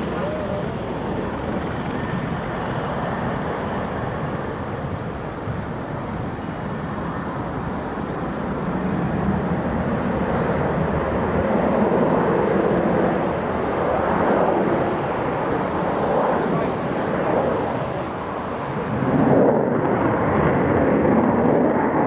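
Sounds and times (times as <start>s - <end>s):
aircraft flying past: 0.0s - 22.0s.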